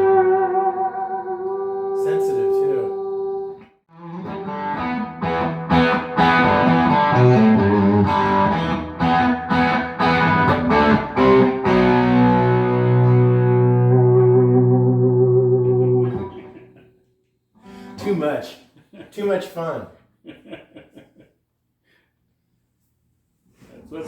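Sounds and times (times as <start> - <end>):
distorted electric guitar chords: 0.0 - 16.8.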